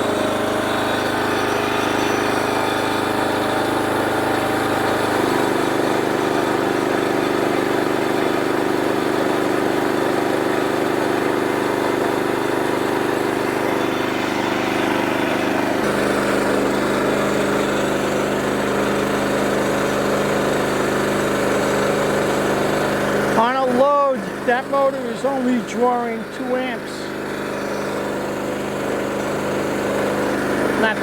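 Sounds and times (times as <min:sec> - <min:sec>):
sawmill cutting a log: 0:00.0 - 0:31.0.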